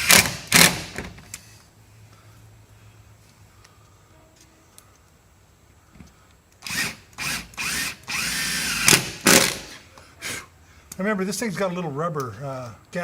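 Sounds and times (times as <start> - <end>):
power drill driving screw: 0.0 - 0.9, 6.6 - 9.8.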